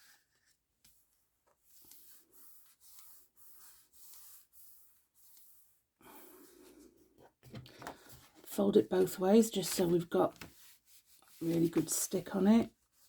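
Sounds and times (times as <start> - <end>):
paper rubbing on card: 1.7 - 5.8.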